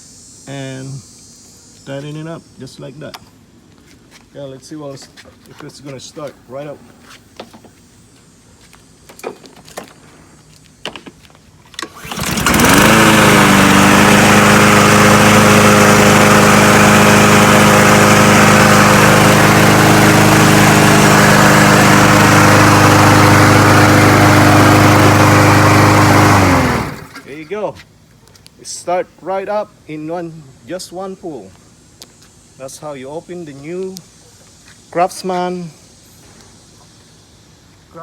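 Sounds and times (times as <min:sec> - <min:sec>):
lawn mower engine running: 0:11.6 - 0:27.5
lawn mower pull start: 0:11.6 - 0:27.5.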